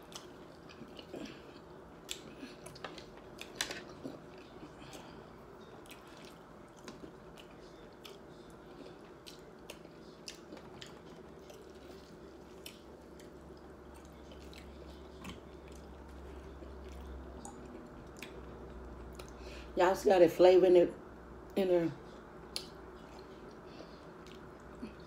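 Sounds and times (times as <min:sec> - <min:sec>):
person chewing crunchy food: 0:00.0 - 0:19.3
steady low hum: 0:00.0 - 0:25.0.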